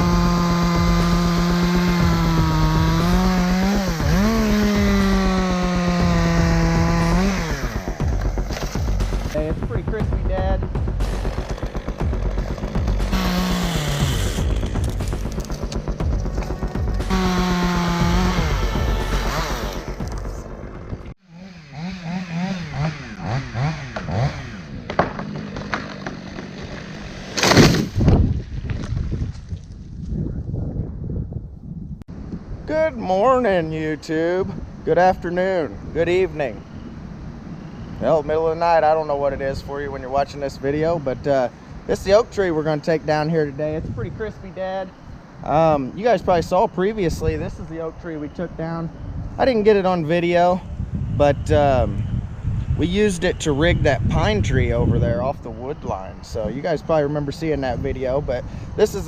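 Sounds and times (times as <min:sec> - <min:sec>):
chainsaw revving: 0:00.0 - 0:09.4, 0:10.7 - 0:20.3, 0:21.2 - 0:27.8
loud crash: 0:27.3 - 0:28.4.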